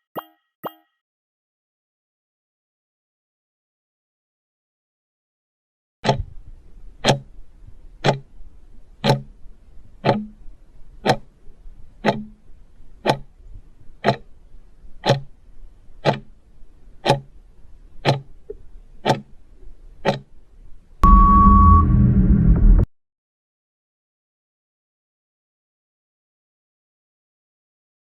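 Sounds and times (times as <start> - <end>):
clock ticking: 6.0 - 20.4.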